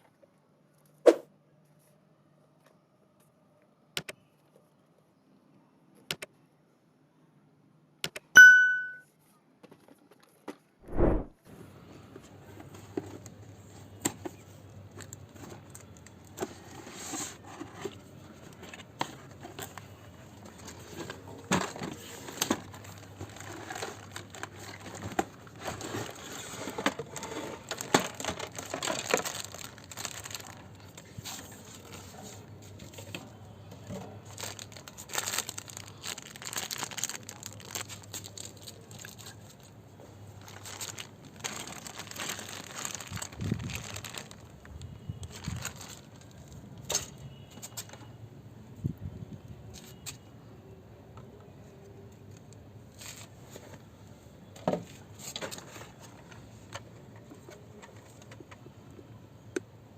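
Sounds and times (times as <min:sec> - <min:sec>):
plastic and cardboard crinkling: 0:12.2 - 0:48.0, 0:52.9 - 0:53.8, 0:54.6 - 0:58.6.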